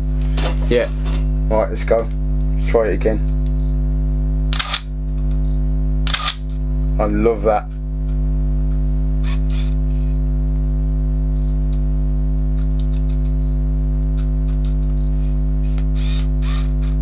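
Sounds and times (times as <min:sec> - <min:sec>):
electrical buzz: 0:03.7 - 0:07.3
camera handling clicks and rustles: 0:04.6 - 0:04.9
high camera beeps: 0:04.6 - 0:06.4.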